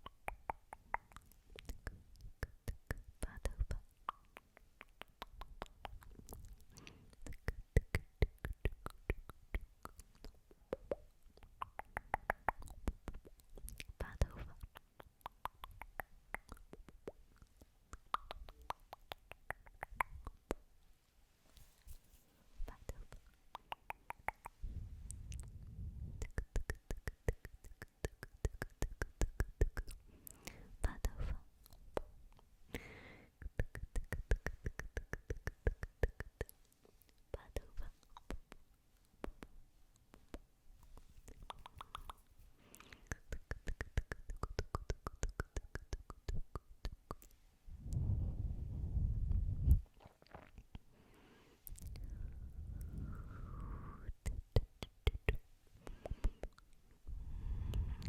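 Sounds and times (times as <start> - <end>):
soft low rubbing rumble: 24.6 - 26.3, 47.7 - 50.2, 51.8 - 54.4
breath blown onto microphone: 47.7 - 50.1, 51.2 - 54.2, 57.1 - 58.0.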